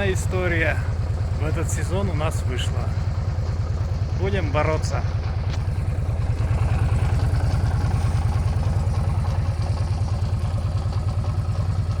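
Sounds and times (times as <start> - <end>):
motorcycle engine idling with knock: 3.0 - 12.0.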